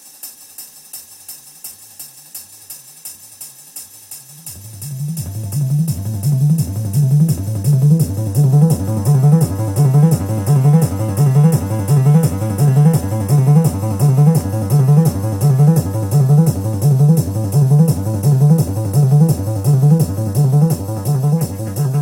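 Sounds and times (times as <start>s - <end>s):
hi-hat ticking: 0.0s - 22.0s
low synthesizer sequencer loop: 4.6s - 22.0s.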